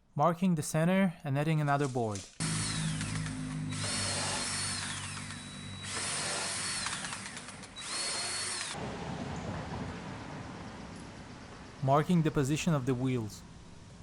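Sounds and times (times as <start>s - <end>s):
power drill whining: 2.4s - 8.8s.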